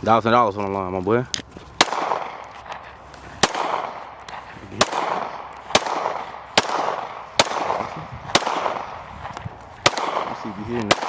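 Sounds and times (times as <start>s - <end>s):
gunshots with echo: 1.8s - 2.8s, 3.4s - 11.0s.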